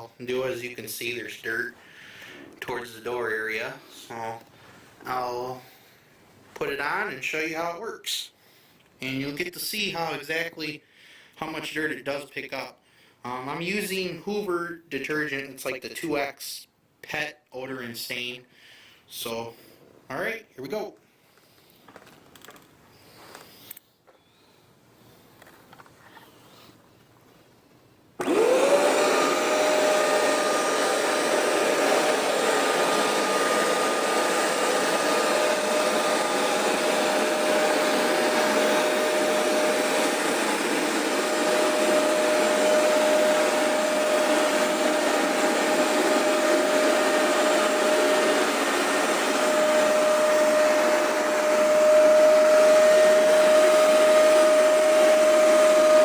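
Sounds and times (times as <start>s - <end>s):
carpet cleaner motor whine: 28.2s - 56.0s
loud suction rush: 28.2s - 56.0s.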